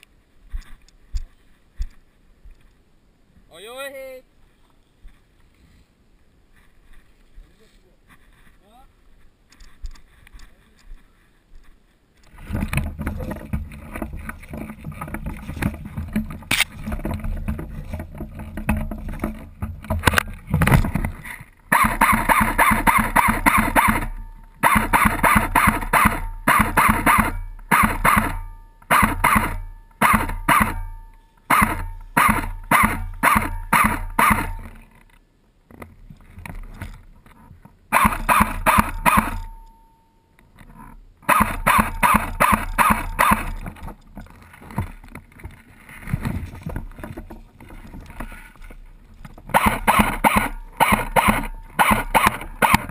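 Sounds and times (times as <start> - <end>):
rustling movement: 0.0 - 3.1, 4.2 - 21.7, 40.4 - 52.9
airsoft rifle firing bursts: 21.7 - 34.7, 37.9 - 39.5, 41.2 - 43.6, 49.5 - 52.9.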